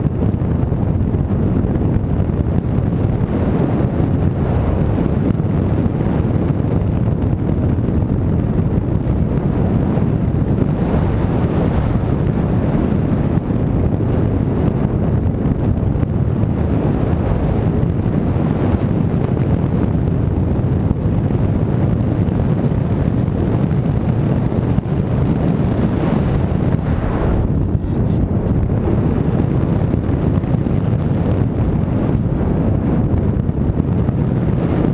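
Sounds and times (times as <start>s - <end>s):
wind rushing over microphone: 0.0s - 34.9s.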